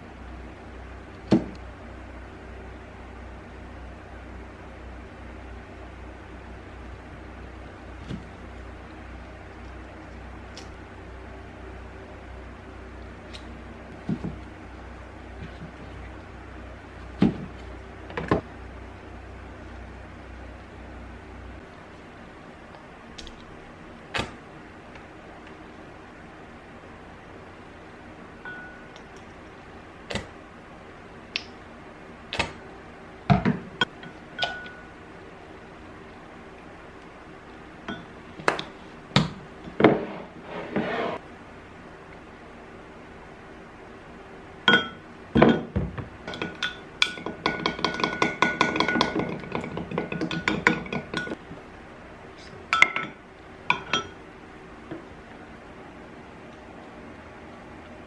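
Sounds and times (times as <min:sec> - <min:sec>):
steady low hum: 0:00.0 - 0:58.0
scraping sound: 0:39.8 - 0:41.2
dishes and cutlery clinking: 0:52.8 - 0:54.2.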